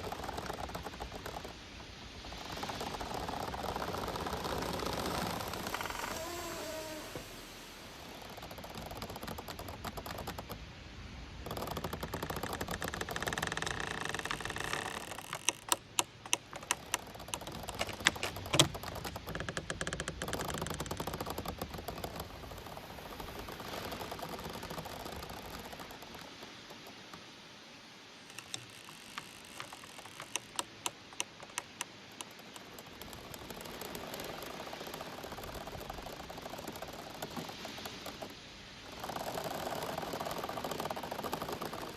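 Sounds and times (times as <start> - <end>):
bamboo stems clicking and knocking: 0.0 - 1.7, 8.2 - 10.7, 11.4 - 27.3, 28.3 - 38.3
bamboo stems creaking: 0.0 - 27.4, 28.1 - 41.9
rustling hiss of wind: 0.0 - 41.9.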